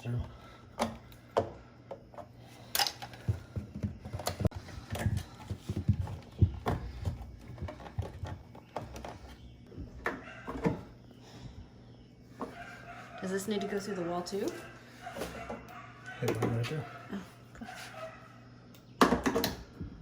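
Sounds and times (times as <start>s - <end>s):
knocks and clicks on electrical box: 15.2s - 16.8s, 19.0s - 20.0s.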